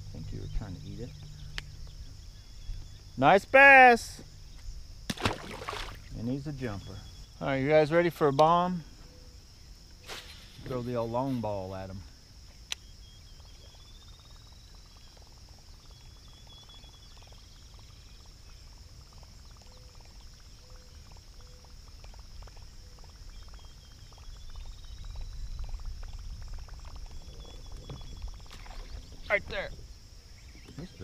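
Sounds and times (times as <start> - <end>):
bird chirps: 0.0 - 3.4, 12.1 - 31.0
insects buzzing: 0.0 - 31.0.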